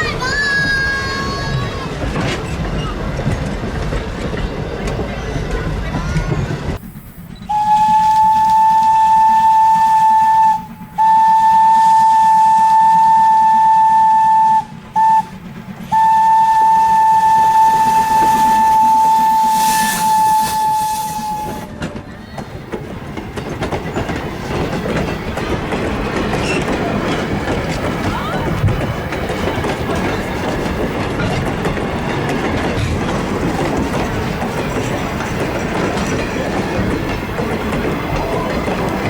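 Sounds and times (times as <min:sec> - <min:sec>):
train running and wheel noise: 0:00.0 - 0:39.0
steam locomotive whistle: 0:07.4 - 0:21.9.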